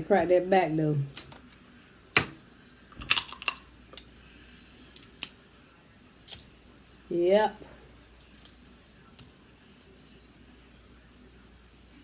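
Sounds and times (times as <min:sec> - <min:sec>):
crab shell cracking: 0:03.0 - 0:04.1, 0:04.9 - 0:05.6, 0:06.2 - 0:06.5.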